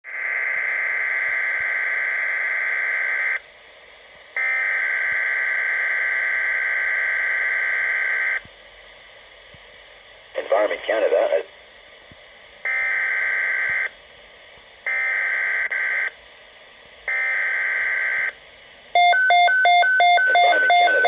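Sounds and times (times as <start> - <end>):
radio hiss: 10.2 - 12.2, 20.2 - 21.0.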